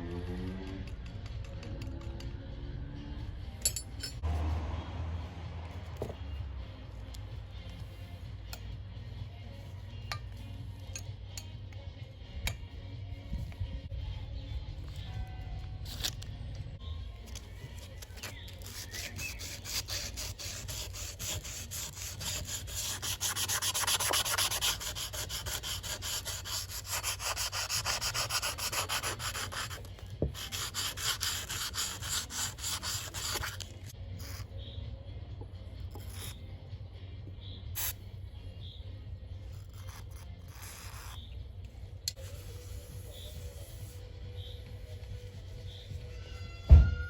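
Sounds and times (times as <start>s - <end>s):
rapid rubbing strokes: 42.2s - 45.9s.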